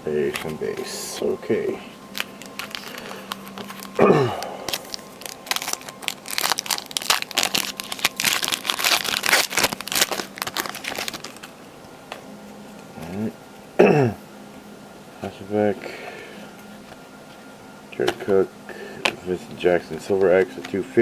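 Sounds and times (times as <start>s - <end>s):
wrapper crinkling and tearing: 2.0s - 11.6s.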